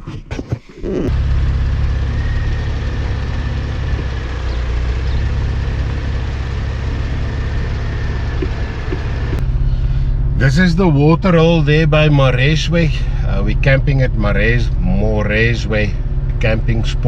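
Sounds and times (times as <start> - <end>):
vehicle engine droning: 0.9 - 17.0.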